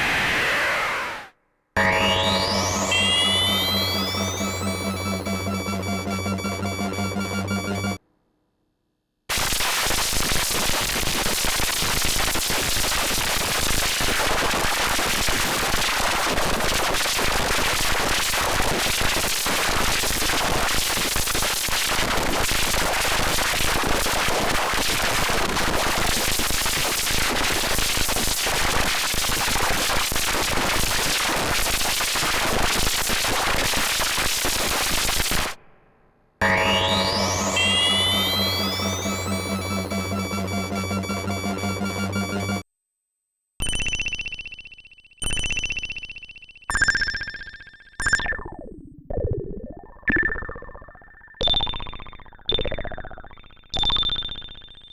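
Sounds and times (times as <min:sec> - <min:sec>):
synth tones with rising sweeps: 0:01.8 - 0:08.0, 0:36.4 - 0:42.6.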